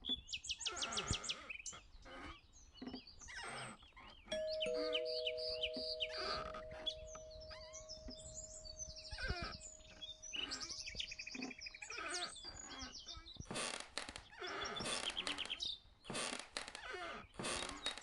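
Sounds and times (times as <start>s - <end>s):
songbirds chirping and trilling: 0.0s - 18.0s
low ringing tone: 4.3s - 12.4s
high ringing tone: 4.4s - 12.2s.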